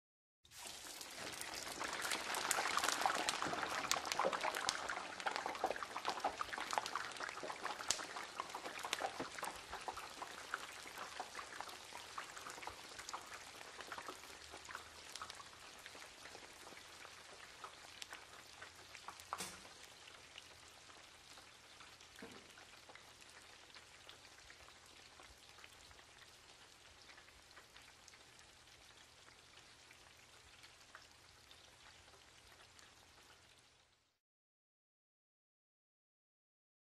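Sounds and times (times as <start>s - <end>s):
oil popping: 0.5s - 20.5s
fries sizzling in oil: 0.5s - 34.2s.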